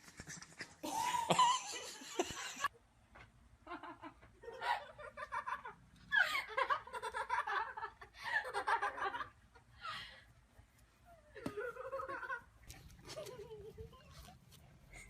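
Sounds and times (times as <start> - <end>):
person laughing: 0.8 - 2.7, 11.3 - 15.0.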